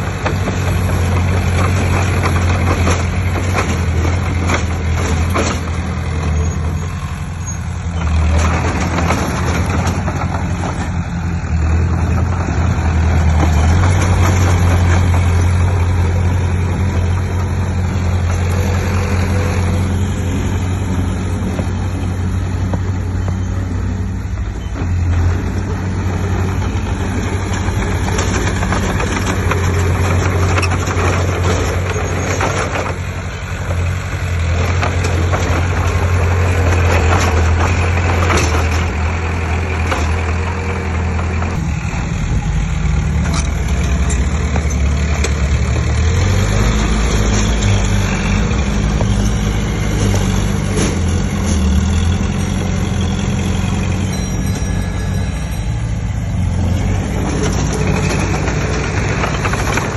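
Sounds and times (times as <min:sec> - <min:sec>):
diesel machinery engine: 0:00.0 - 0:59.9
machinery clatter: 0:00.0 - 0:59.9.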